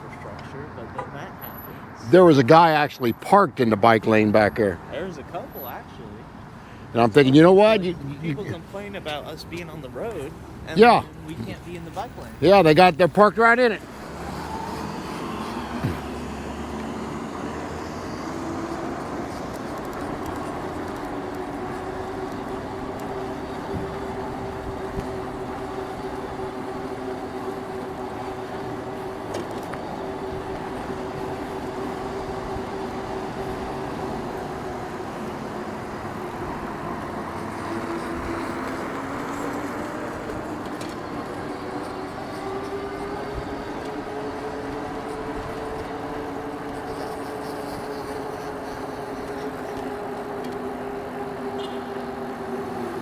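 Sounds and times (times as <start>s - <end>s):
electric bike motor whining: 13.8s - 53.0s
tyre noise: 14.1s - 17.5s.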